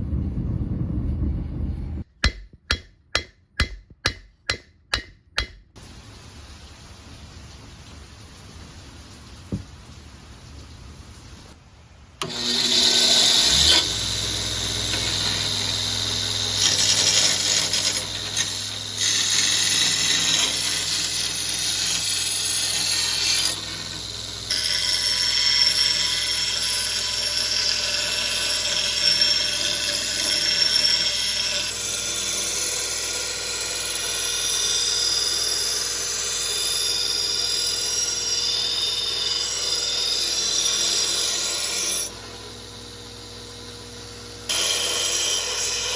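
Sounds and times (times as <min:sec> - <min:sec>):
power tool grinding steel: 0:12.2 - 0:45.9.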